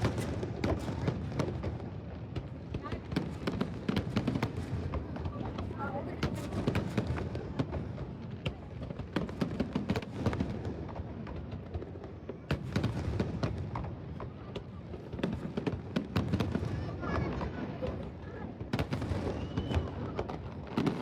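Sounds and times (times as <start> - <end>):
fireworks bangs and pops: 0.0 - 21.0.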